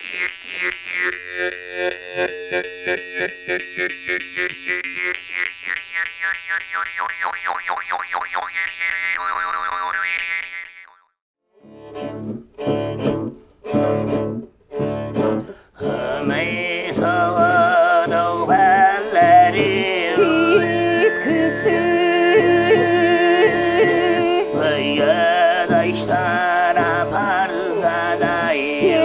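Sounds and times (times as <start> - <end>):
rhythmic vocal pulses: 15.2 - 29.0
throat singing with overtones: 15.4 - 29.0.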